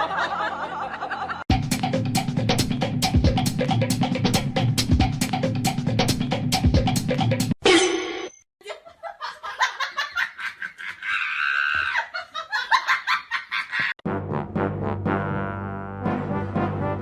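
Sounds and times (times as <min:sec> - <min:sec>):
people laughing: 0:00.0 - 0:01.5, 0:08.6 - 0:14.0.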